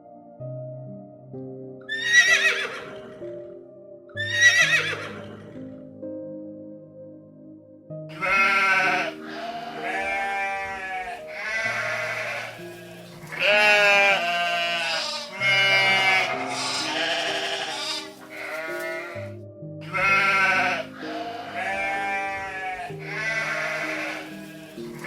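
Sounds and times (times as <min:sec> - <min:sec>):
soft music of held low notes: 0:00.0 - 0:25.0
wavering bleating calls: 0:04.2 - 0:05.3, 0:08.1 - 0:25.0.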